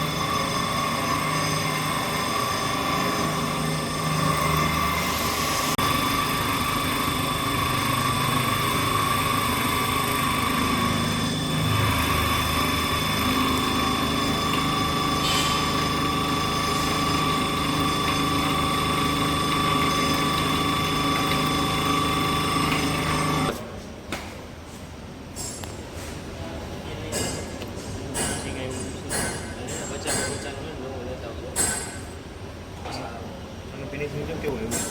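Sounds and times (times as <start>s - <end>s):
drilling machine spindle whine: 0.0s - 23.6s.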